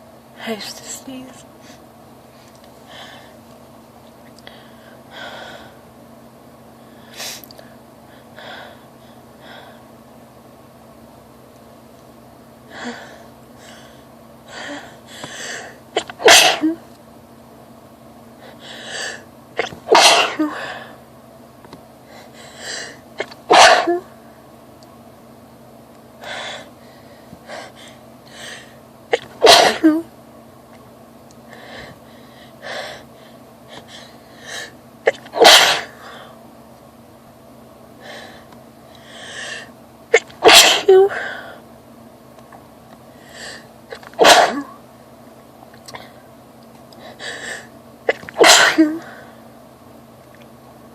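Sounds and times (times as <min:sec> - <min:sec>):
woman sneezing: 0:16.0 - 0:16.8, 0:19.6 - 0:20.6, 0:23.2 - 0:24.1, 0:29.1 - 0:30.1, 0:35.1 - 0:36.0, 0:40.1 - 0:41.2, 0:43.9 - 0:44.8, 0:48.1 - 0:49.1.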